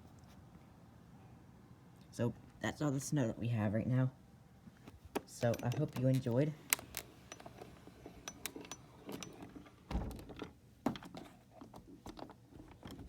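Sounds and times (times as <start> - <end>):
dull thump: 9.9 - 10.4.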